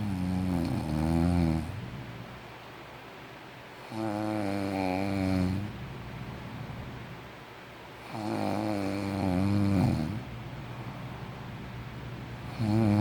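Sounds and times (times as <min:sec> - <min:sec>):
person snoring: 0:00.0 - 0:01.8, 0:08.1 - 0:10.2, 0:12.5 - 0:13.0.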